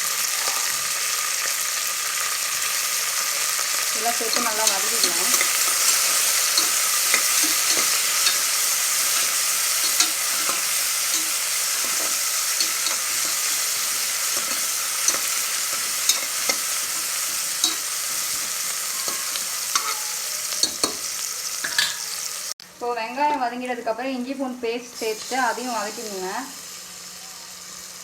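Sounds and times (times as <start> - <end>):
vegetables sizzling in hot oil: 0.0 - 28.0
spoon scraping against pot: 4.2 - 22.2.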